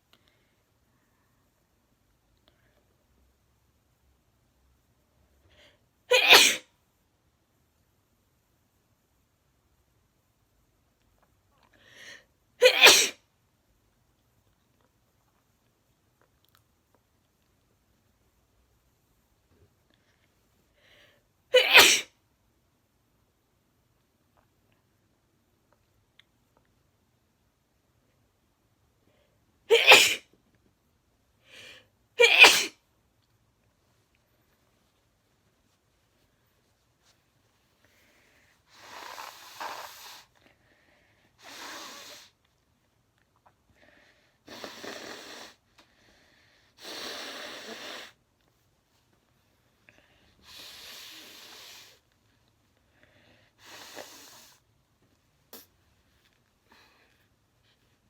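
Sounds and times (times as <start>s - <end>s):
person sneezing: 6.1s - 6.7s, 12.6s - 13.2s, 21.5s - 22.1s, 29.7s - 30.3s, 32.2s - 32.8s
person blowing nose: 29.7s - 30.2s, 38.7s - 40.3s, 41.4s - 42.4s, 44.4s - 45.6s, 46.8s - 48.2s, 50.4s - 52.0s, 53.6s - 54.6s
sharp sniff: 41.4s - 42.4s, 46.2s - 48.2s, 50.3s - 52.1s, 53.5s - 54.7s.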